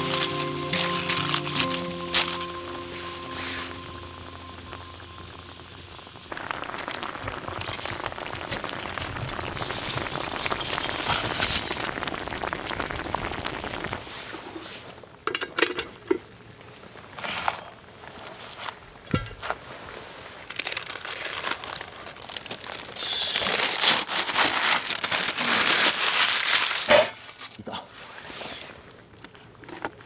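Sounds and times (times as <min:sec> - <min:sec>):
food sizzling in a pot: 0:00.0 - 0:14.8.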